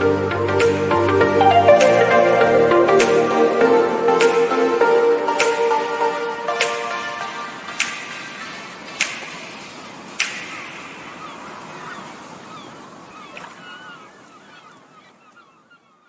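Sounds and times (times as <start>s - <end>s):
noisy wash: 0.0s - 15.3s
sharp snaps: 5.3s - 5.8s, 6.6s - 7.1s, 7.7s - 12.0s
short chirping calls: 10.2s - 16.0s.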